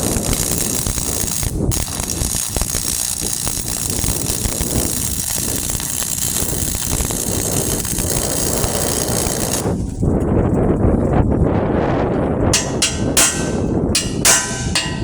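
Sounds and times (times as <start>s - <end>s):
welding arc crackling: 0.0s - 10.0s.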